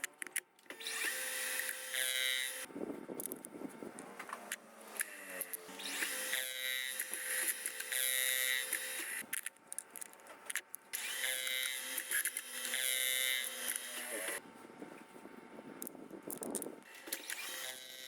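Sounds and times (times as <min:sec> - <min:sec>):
electric motor whining: 0:00.7 - 0:02.7, 0:03.8 - 0:09.2, 0:10.9 - 0:14.4, 0:16.3 - 0:18.0.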